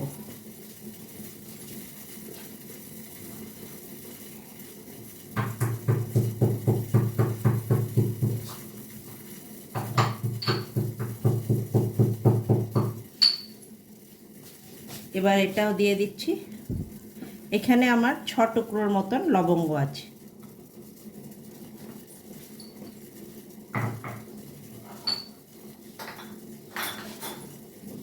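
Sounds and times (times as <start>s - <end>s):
cloves being pounded: 5.4s - 8.6s, 9.7s - 13.4s.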